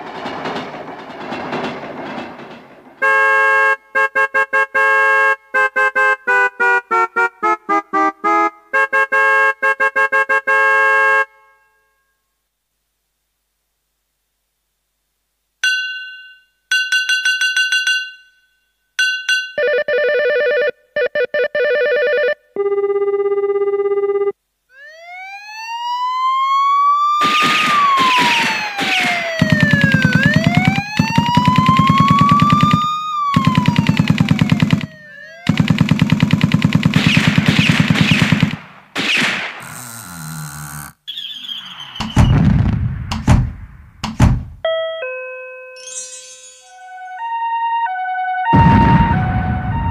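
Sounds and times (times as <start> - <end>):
sliding siren-like tone: 24.7 - 36.9, 45.8 - 49.9
keyboard machine-gun sound effect: 27.2 - 39.8, 41.5 - 44.6
electronic warbling phone ring: 29.5 - 35.7, 45.8 - 47.3.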